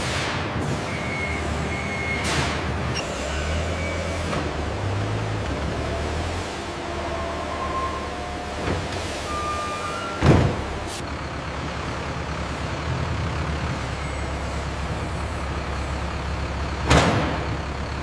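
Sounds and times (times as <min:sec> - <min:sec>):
truck engine running: 0:00.0 - 0:18.0
reversing beeps: 0:00.9 - 0:04.2.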